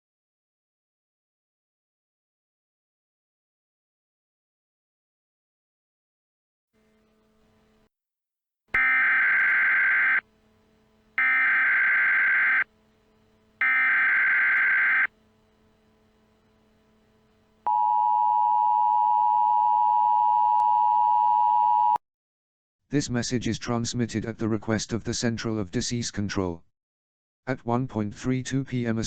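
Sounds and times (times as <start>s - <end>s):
two-tone attention signal: 8.8s - 10.2s, 11.2s - 12.7s, 13.6s - 15.1s
warbling digital data screech: 8.8s - 10.2s, 11.2s - 12.7s, 13.6s - 15.1s.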